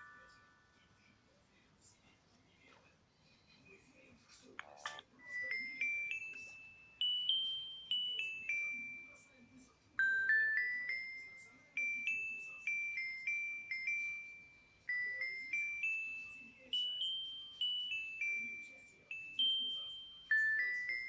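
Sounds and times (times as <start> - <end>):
bell-like phone ringtone melody: 4.6 - 21.0.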